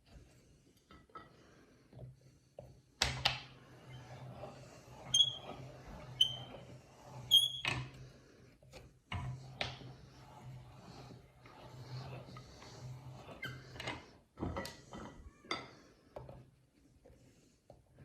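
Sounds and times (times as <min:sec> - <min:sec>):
short high squeaks: 0:05.0 - 0:05.6, 0:06.2 - 0:06.6, 0:07.2 - 0:07.7.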